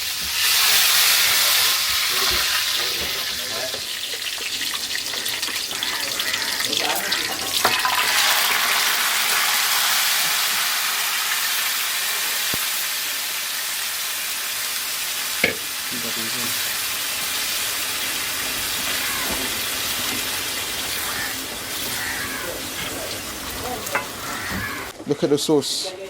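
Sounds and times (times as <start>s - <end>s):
sauce sizzling in a pan: 0.0s - 24.9s.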